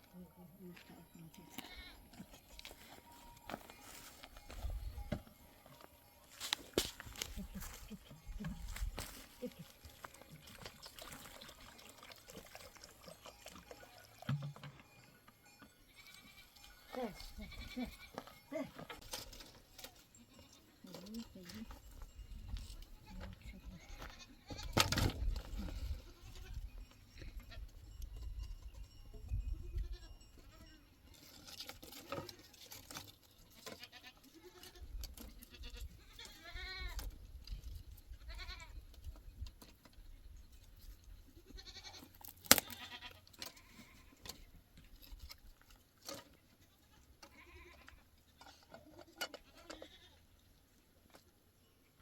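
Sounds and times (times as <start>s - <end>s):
livestock bleating: 1.4s - 2.1s, 15.9s - 18.7s, 23.0s - 24.8s, 29.8s - 30.8s, 33.6s - 37.0s, 38.2s - 38.8s, 41.4s - 44.2s, 46.7s - 48.1s, 49.0s - 50.2s.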